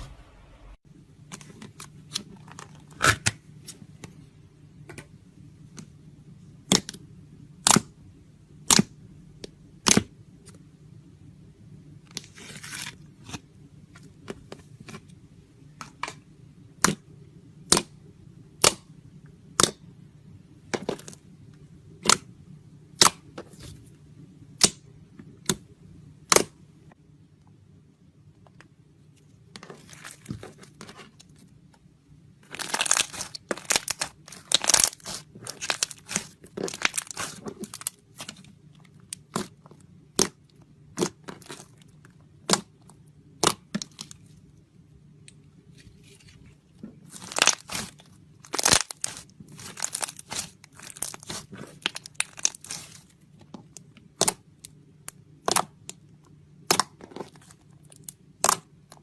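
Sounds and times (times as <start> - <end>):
slime crackling and popping: 32.4 - 44.2, 47.0 - 56.0, 56.6 - 59.0.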